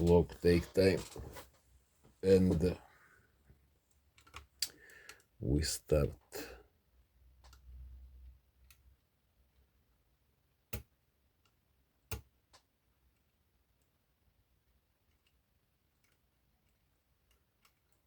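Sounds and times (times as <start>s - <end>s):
handling rustle: 0.0s - 2.8s.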